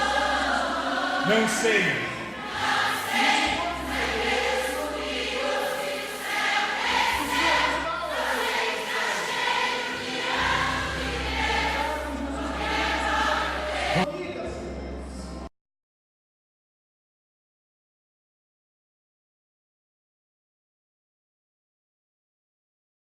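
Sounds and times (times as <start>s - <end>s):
congregation singing: 0.0s - 15.5s.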